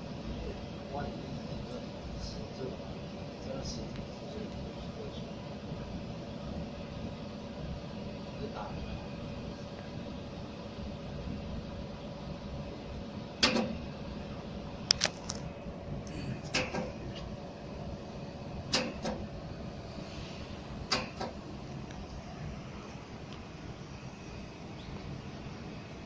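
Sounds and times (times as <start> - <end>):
machine hum: 0.0 - 26.0
laser welder snaps: 18.7 - 19.2.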